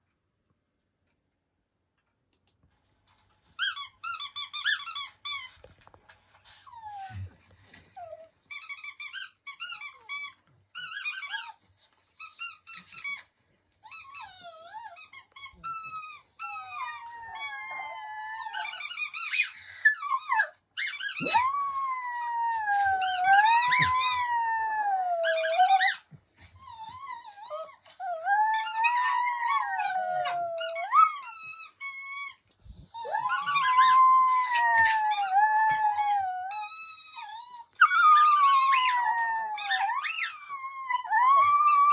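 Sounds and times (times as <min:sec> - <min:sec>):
squeaky toy squeaking: 0:03.6 - 0:05.6, 0:08.5 - 0:11.6, 0:12.2 - 0:13.3, 0:13.9 - 0:21.5, 0:25.2 - 0:26.0, 0:30.6 - 0:34.0, 0:36.0 - 0:38.9, 0:39.6 - 0:40.5
puppy howling: 0:16.4 - 0:18.8, 0:21.2 - 0:26.0, 0:26.8 - 0:31.3, 0:32.9 - 0:41.9.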